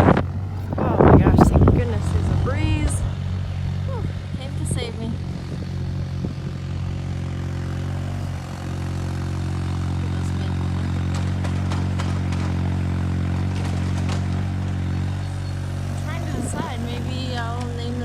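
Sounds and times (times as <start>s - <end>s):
engine running: 0.0s - 18.0s
light clatter: 10.6s - 18.0s.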